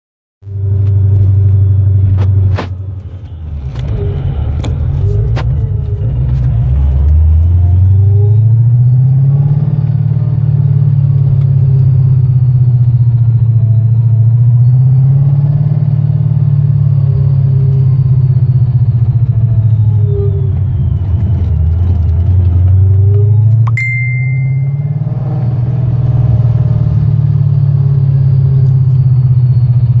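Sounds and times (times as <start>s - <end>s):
car engine drone: 0.4s - 30.0s
short high beep: 23.3s - 25.9s.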